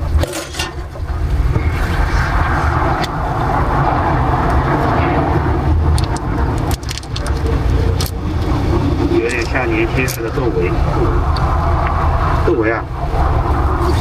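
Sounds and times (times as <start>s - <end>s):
traffic rumble: 0.0s - 14.0s.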